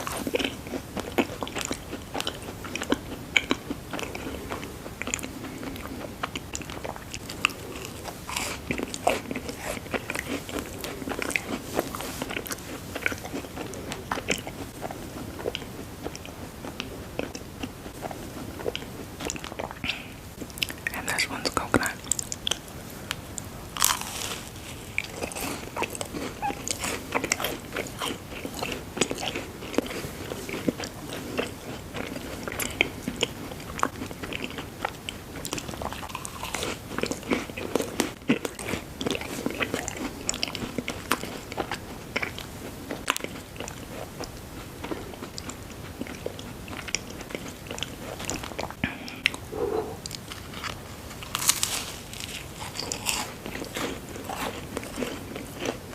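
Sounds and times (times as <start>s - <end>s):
crisp crunching while chewing: 0.0s - 49.4s, 50.1s - 55.9s.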